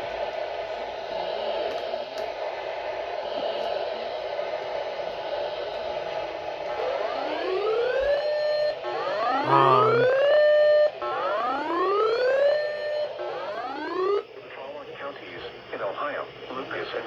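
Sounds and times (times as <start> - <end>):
steady noisy hiss: 0.0 - 17.0
siren winding up: 6.8 - 14.2.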